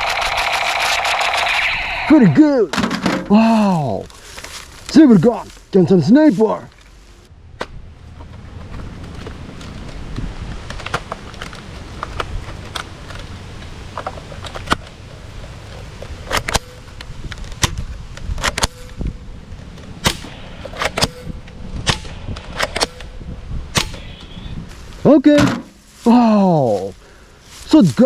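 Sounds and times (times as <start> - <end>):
toy guns firing: 0.0 - 2.4.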